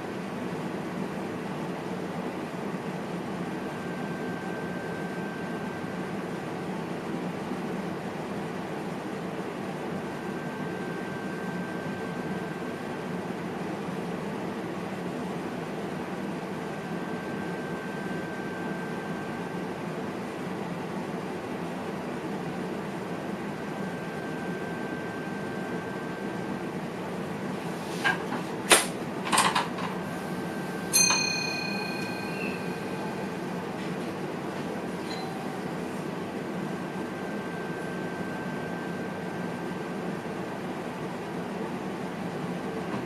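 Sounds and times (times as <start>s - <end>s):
train cab running noise: 23.7s - 39.3s
thin high whine: 30.2s - 34.1s, 34.9s - 36.1s
bell-like ding: 30.9s - 33.4s, 35.1s - 35.5s.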